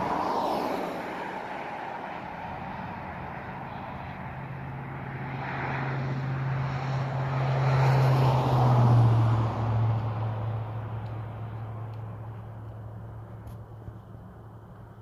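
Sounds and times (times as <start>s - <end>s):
engine passing by: 0.0s - 15.0s.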